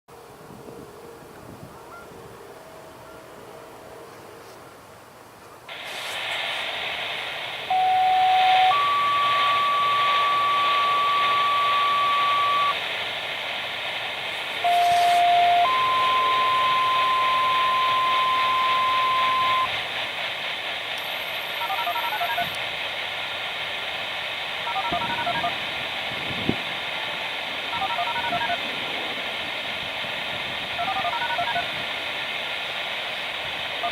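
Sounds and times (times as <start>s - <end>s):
radio channel hiss: 4.0s - 33.9s
touch-tone beeps: 7.7s - 12.8s, 14.6s - 19.7s, 21.6s - 22.6s, 24.7s - 25.6s, 27.7s - 28.6s, 30.8s - 31.7s
two-tone siren activation tones: 7.7s - 12.8s, 14.6s - 19.8s, 21.6s - 22.6s, 24.7s - 25.6s, 27.7s - 28.6s, 30.8s - 31.7s.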